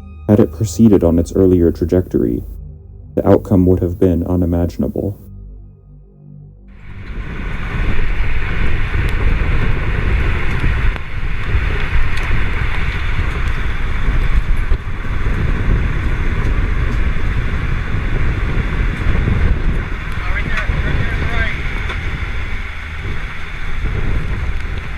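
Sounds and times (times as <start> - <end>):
strong wind roaring on microphone: 6.8 - 24.9.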